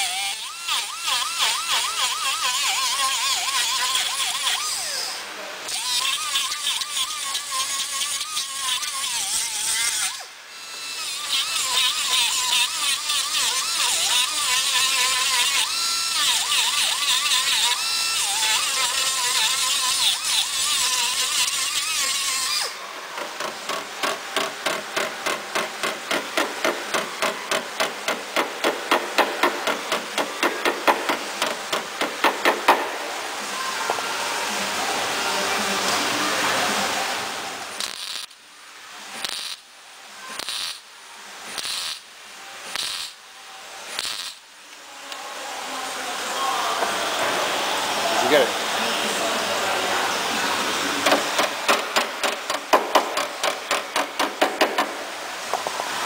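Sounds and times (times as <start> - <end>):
hard knocking on steel: 23.4 - 32.9.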